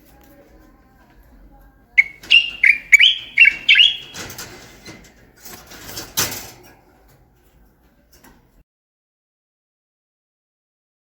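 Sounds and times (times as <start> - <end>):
bird whistled notes: 2.0 - 4.3
bird scratchy calls: 2.0 - 4.4.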